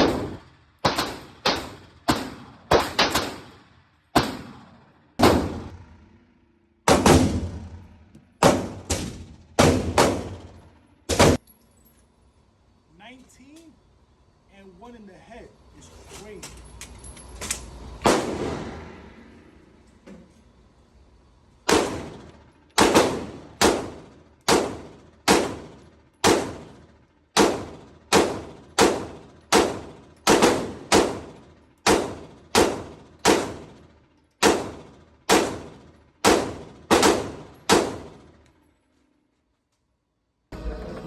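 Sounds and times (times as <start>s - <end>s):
pistol shots: 0.0s - 3.6s, 4.2s - 6.0s, 6.9s - 11.4s, 18.0s - 18.9s, 21.6s - 38.4s.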